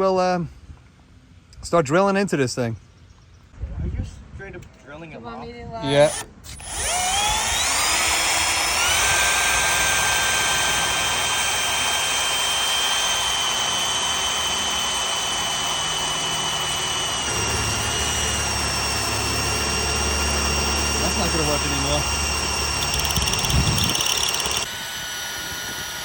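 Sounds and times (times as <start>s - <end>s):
electric drill drilling metal: 5.8s - 26.0s.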